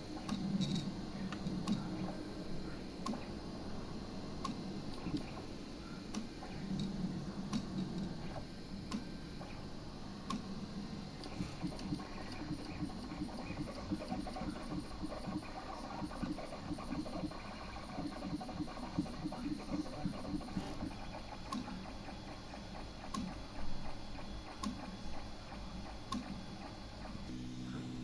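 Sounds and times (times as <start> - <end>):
printer ticking: 11.2 - 27.2.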